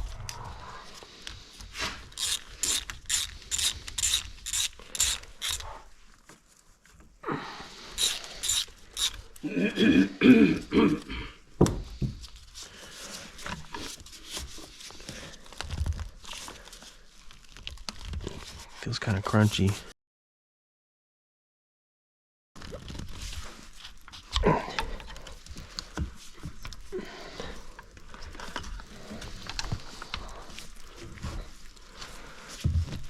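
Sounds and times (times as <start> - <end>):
socket ratchet clicking: 2.2 - 5.6, 8.0 - 9.2.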